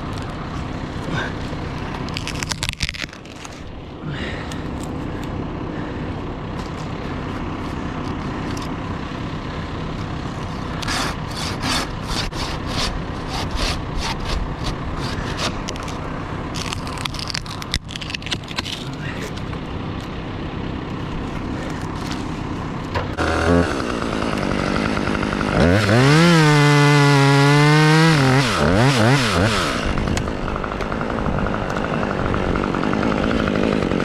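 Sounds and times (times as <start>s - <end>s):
saw cutting branch: 0.0s - 3.8s, 10.4s - 19.5s, 23.1s - 34.0s
vehicle engine running: 0.0s - 34.0s.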